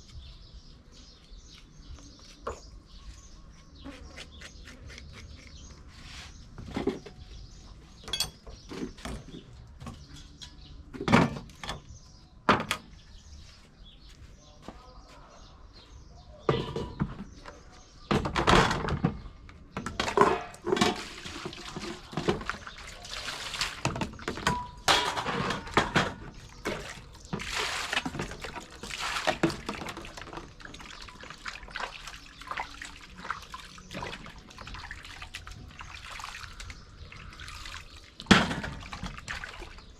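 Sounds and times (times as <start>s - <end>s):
knocks and clatter of fruit: 6.5s - 11.9s, 16.4s - 22.7s, 23.5s - 30.6s, 38.2s - 39.2s
water splashing in a basin: 19.9s - 39.9s.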